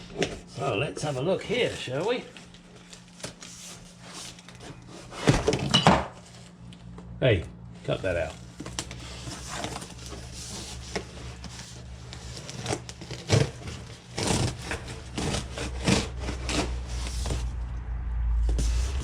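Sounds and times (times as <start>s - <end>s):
cardboard parcel being opened: 8.5s - 17.6s
low hum: 14.3s - 19.0s.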